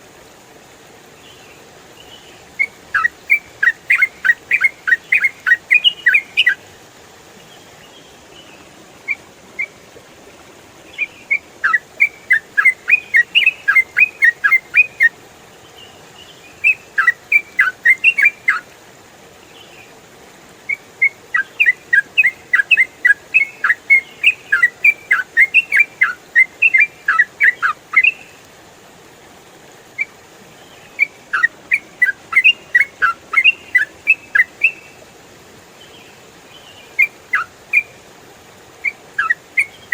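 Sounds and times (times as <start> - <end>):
bird singing chattering whistles: 2.6 - 6.6, 10.9 - 15.1, 16.6 - 18.6, 20.7 - 28.3, 30.9 - 34.9, 37.0 - 37.9, 38.8 - 39.9.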